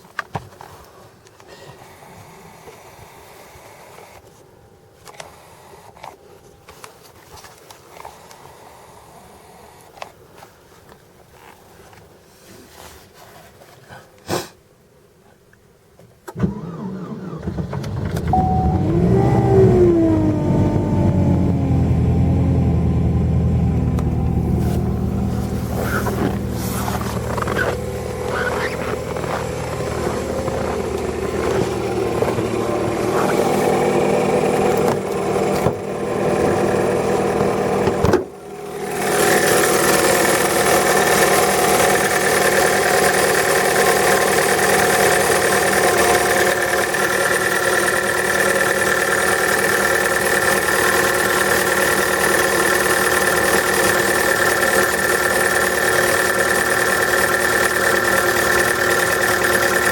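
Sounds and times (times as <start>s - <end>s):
car engine running: 16.5s - 59.9s
high whining tones: 18.2s - 37.8s.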